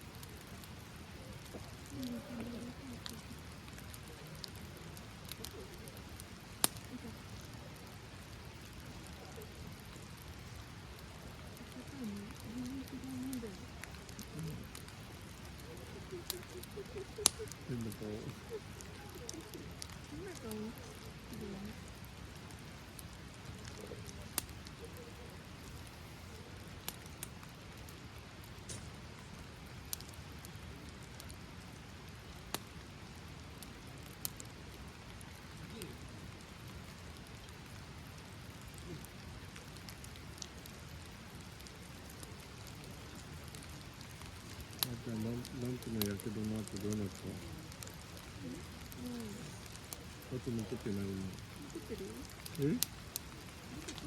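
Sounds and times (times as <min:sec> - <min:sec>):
rain pattering: 0:00.0 - 0:54.0
sharp ticks of raindrops: 0:00.0 - 0:54.0
low murmured voice: 0:00.8 - 0:26.8, 0:35.4 - 0:36.4, 0:38.7 - 0:39.1, 0:44.7 - 0:54.0
light ticks: 0:05.2 - 0:05.6, 0:06.6 - 0:07.5, 0:11.6 - 0:17.9, 0:29.9 - 0:30.2.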